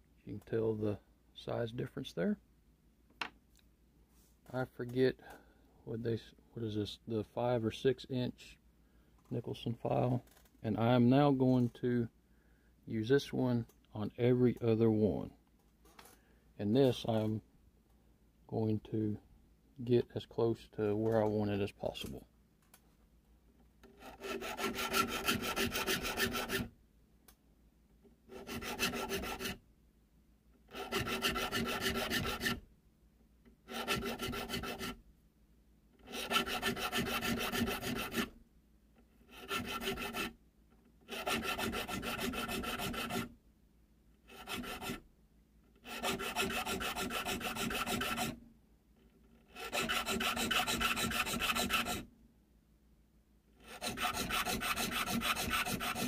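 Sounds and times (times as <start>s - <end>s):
file rasping on metal: 23.8s - 26.7s, 28.3s - 29.6s, 30.7s - 32.6s, 33.6s - 35.0s, 36.0s - 38.3s, 39.2s - 40.4s, 41.0s - 43.3s, 44.2s - 45.0s, 45.8s - 48.4s, 49.2s - 52.1s, 53.6s - 56.0s.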